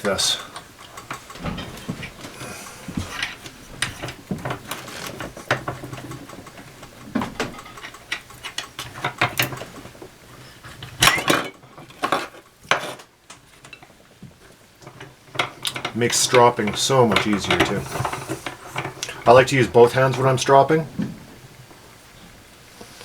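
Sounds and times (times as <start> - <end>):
metallic clicks and scrapes: 0.2 - 13.9.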